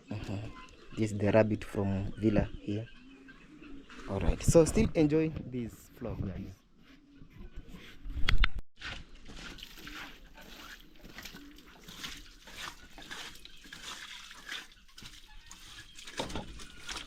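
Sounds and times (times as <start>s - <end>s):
water splashing and trickling: 8.8s - 17.0s.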